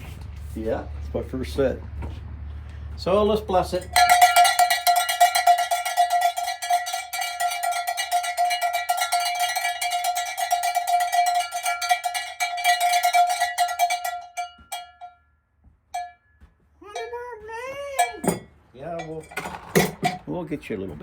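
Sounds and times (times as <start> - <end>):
small hand bell ringing: 3.7 - 15.3, 18.0 - 20.2.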